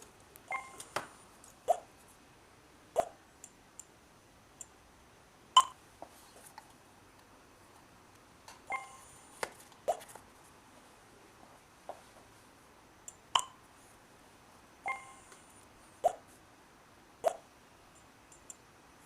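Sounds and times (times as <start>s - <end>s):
short electronic beeps: 0.5s - 0.8s, 14.9s - 15.3s.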